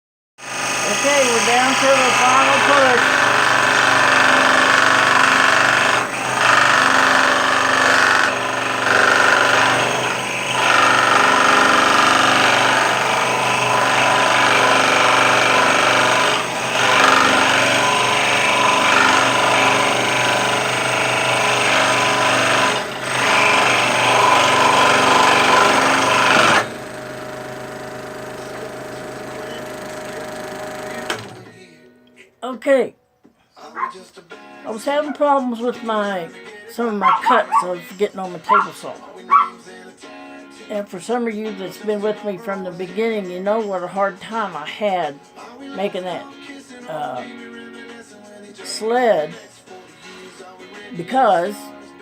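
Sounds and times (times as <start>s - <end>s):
scroll saw cutting wood: 0.4s - 26.8s, 38.5s - 39.6s.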